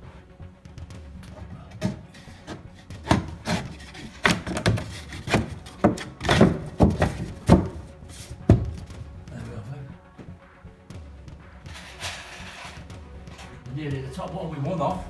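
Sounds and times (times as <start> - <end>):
knocks on wooden staircase: 1.3 - 9.3.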